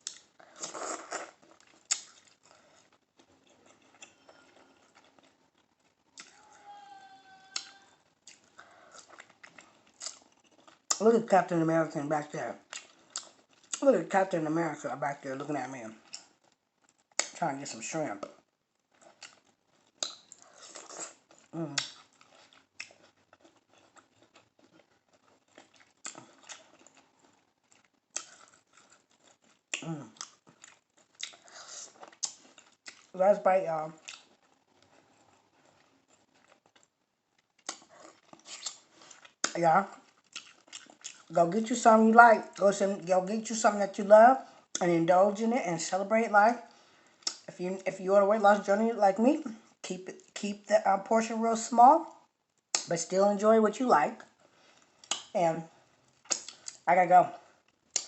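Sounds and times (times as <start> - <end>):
chewing and mouth smacks: 0.0 - 6.4, 7.5 - 11.0, 12.6 - 13.8, 16.0 - 17.4, 18.2 - 33.2, 34.0 - 41.3, 47.2 - 47.5, 52.6 - 52.9, 54.7 - 55.3, 56.1 - 56.9, 57.6 - 58.0.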